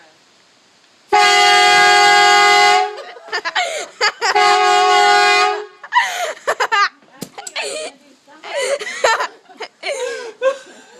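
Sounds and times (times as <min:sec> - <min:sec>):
air horn blasting: 0:01.2 - 0:02.9, 0:04.4 - 0:05.7.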